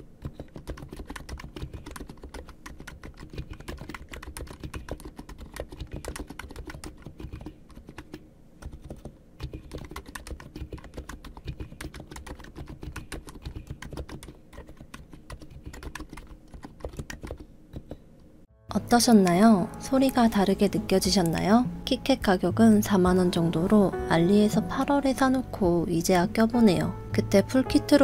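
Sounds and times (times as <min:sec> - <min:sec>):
fast typing on keyboard: 0:00.2 - 0:18.0.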